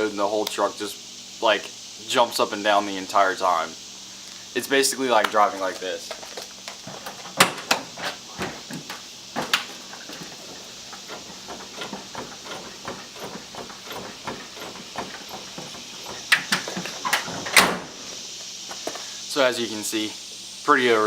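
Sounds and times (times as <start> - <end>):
truck suspension knocks and clunks: 8.4 - 17.9.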